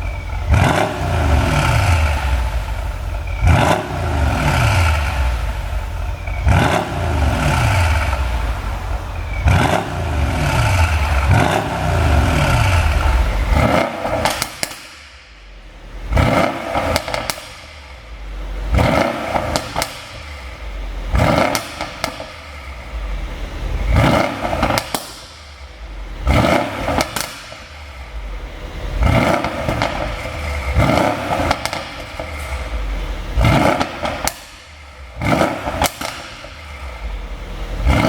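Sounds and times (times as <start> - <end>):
car engine revving: 0.0 - 38.0
exhaust pops and crackles: 13.0 - 15.5, 16.1 - 18.0, 18.7 - 20.5, 21.1 - 22.7, 23.9 - 28.3, 29.0 - 38.0.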